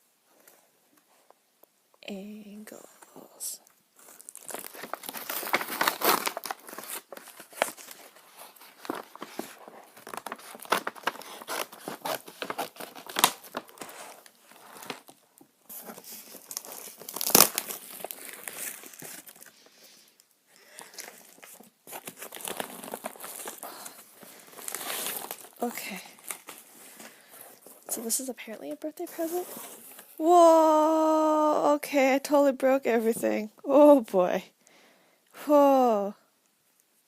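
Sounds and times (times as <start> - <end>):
packaging being torn and crinkled: 4.0 - 19.6, 20.2 - 28.0.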